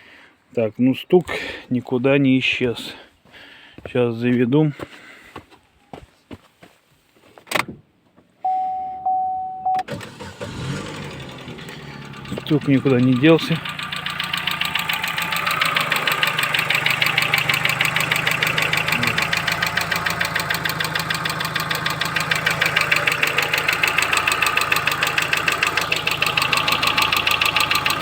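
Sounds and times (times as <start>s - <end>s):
car engine idling: 10.0s - 28.0s
fast regular engine knock: 12.1s - 28.0s.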